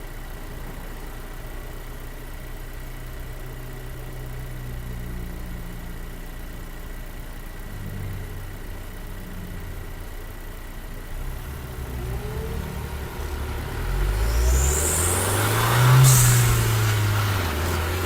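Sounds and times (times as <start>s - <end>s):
car engine idling: 0.0s - 18.0s
thin high whistle: 12.1s - 18.0s.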